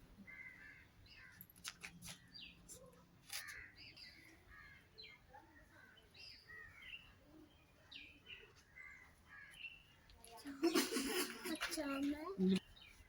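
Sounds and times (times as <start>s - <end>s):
birds calling: 0.0s - 13.0s
crows cawing: 0.2s - 1.4s.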